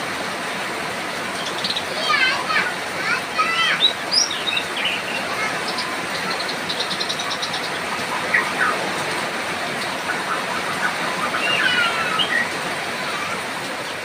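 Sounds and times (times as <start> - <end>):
rain falling: 0.0 - 14.0
songbird chattering and whistling: 3.8 - 9.0, 9.8 - 12.6.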